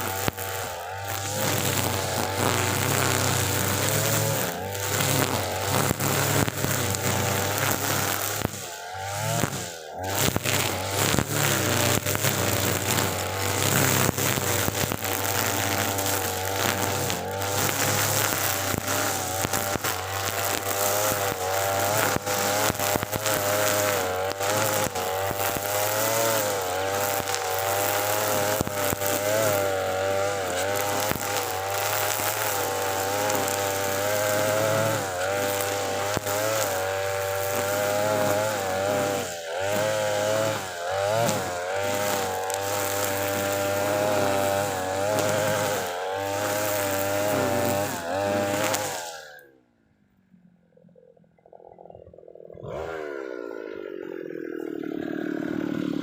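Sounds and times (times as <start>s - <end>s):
brush cutter engine at full throttle: 0.0s - 49.6s, 52.3s - 56.0s.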